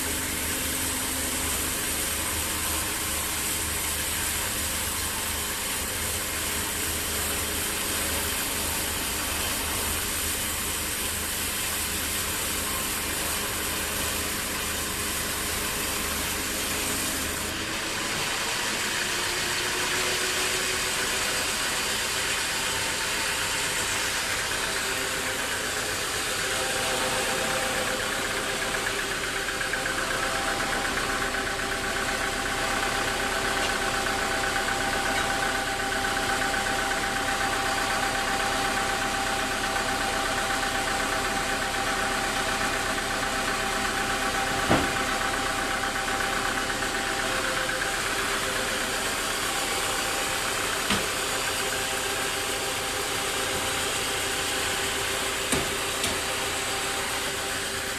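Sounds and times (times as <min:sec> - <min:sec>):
sawmill machinery drone: 0:00.0 - 0:57.9
high whine: 0:23.7 - 0:53.9.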